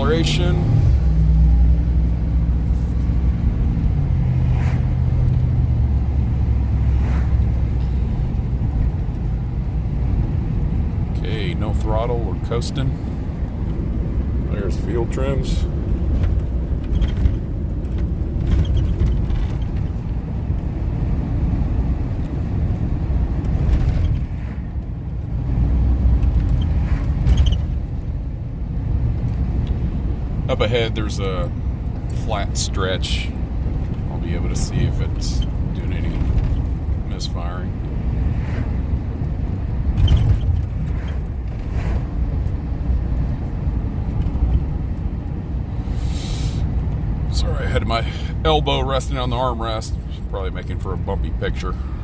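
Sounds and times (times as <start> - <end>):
engine and road noise rumble: 0.0 - 52.0
faint rattles in cab: 14.5 - 20.9, 30.5 - 37.7, 39.8 - 43.3.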